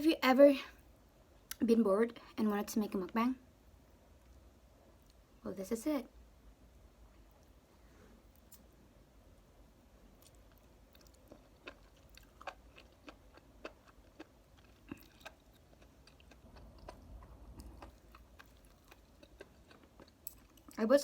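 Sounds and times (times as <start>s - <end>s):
person chewing: 10.1s - 20.8s.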